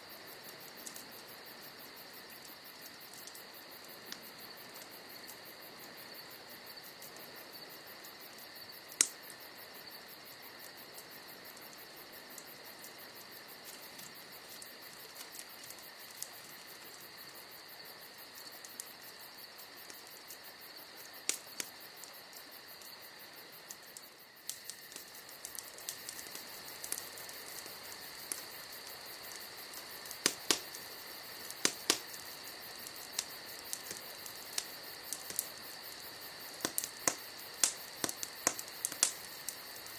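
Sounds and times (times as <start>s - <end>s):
campfire crackling: 0.0s - 39.9s
crickets chirping: 0.0s - 39.9s
logs popping: 29.7s - 30.8s, 31.4s - 32.3s.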